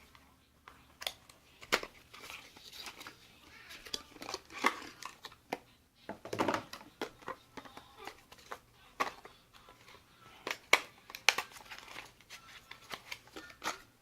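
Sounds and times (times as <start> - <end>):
plastic packaging clicks and taps: 10.4 - 12.1.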